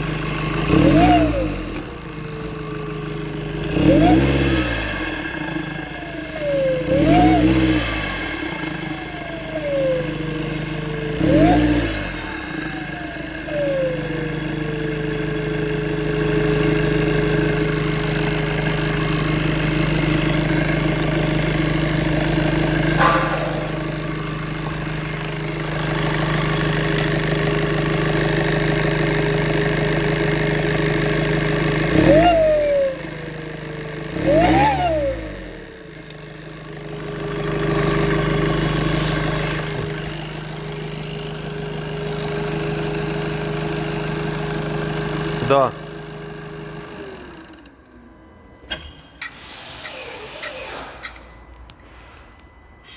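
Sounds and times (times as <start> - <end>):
turbocharged engine revving and idling: 0.0 - 49.0
turbo whistle: 23.0 - 25.0.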